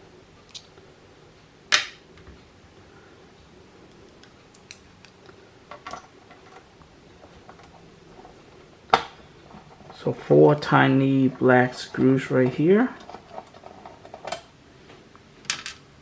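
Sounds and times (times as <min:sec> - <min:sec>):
plastic parts being handled: 0:05.7 - 0:14.5.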